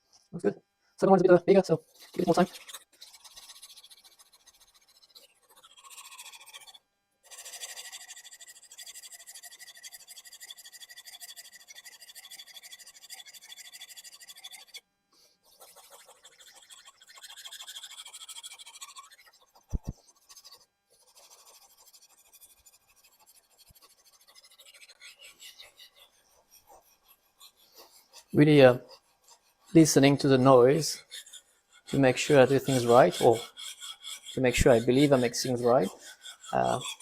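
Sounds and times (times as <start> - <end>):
knife scraping on whetstone: 15.6 - 20.5, 21.1 - 37.0.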